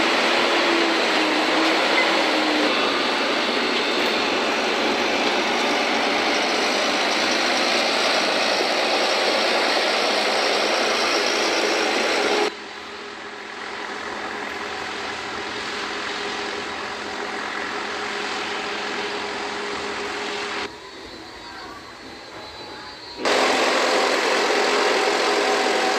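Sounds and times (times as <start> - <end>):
harvesting machinery running: 23.2 - 25.9.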